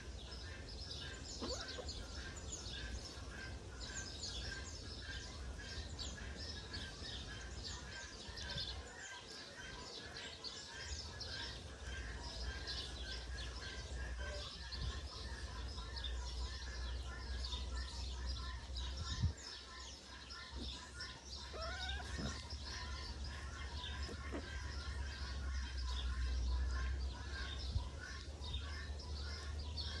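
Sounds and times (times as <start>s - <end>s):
small birds chirping: 0.0s - 30.0s
rising bird call: 21.5s - 22.4s.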